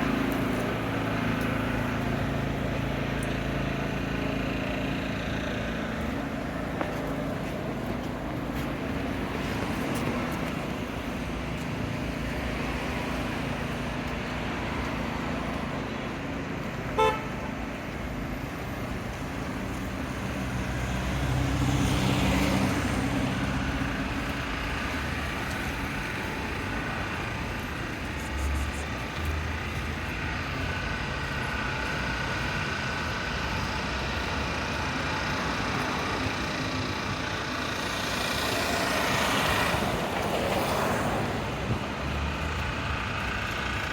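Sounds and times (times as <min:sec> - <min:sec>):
cars passing: 0:00.0 - 0:43.9
car horn toot: 0:16.9 - 0:17.4.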